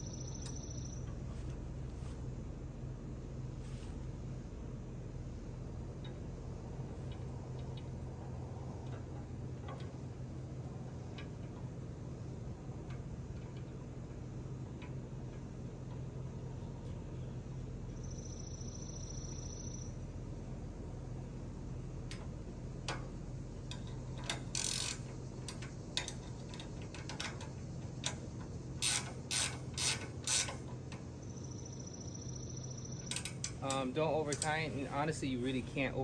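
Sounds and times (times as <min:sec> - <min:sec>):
steady low hum: 0:00.0 - 0:36.0
short ratcheting scrapes: 0:24.3 - 0:25.1, 0:28.8 - 0:30.7
sharp metallic clicks: 0:33.1 - 0:34.7.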